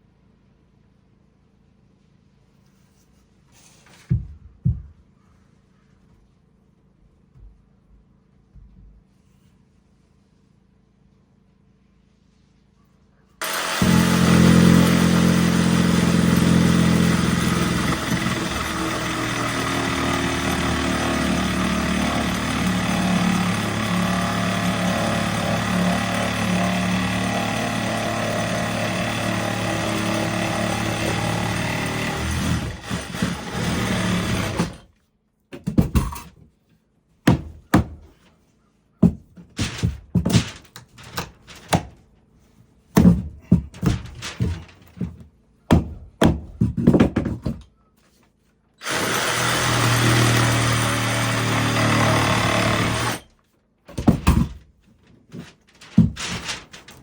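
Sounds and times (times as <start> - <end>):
power tool humming: 13.4 - 34.8, 48.8 - 53.2.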